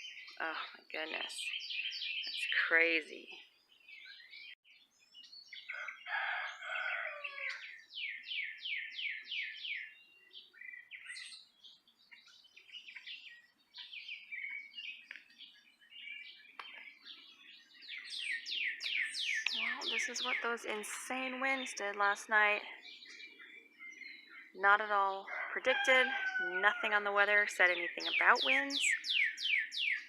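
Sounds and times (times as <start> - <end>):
bird chirps: 0.0 - 30.0
songbirds singing: 0.0 - 30.0.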